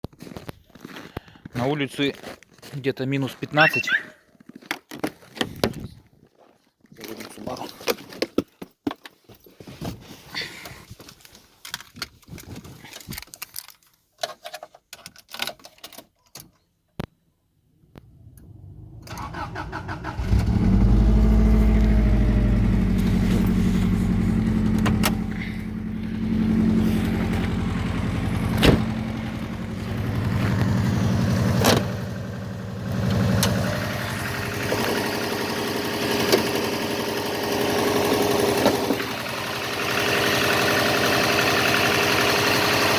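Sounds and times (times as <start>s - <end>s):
car engine cranking and idling: 17.8s - 42.9s.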